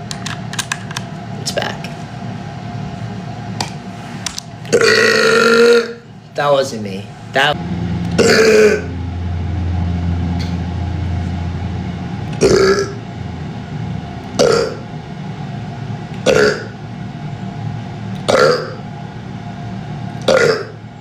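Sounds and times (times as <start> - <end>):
steady low hum: 0.0 - 21.0
man burping: 4.7 - 6.0, 8.1 - 8.9, 14.4 - 14.8, 16.2 - 16.7, 18.2 - 18.8, 20.2 - 20.8.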